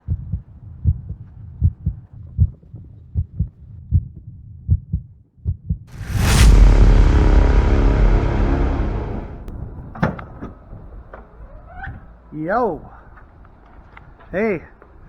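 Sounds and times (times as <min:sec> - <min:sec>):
loud rushing whoosh: 0:05.9 - 0:10.4.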